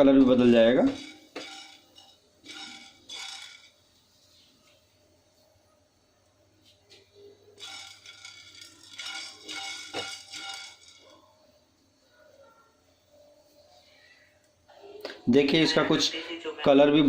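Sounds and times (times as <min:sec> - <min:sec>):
spices rattling in a dry pan: 0:00.8 - 0:03.9, 0:07.6 - 0:11.4.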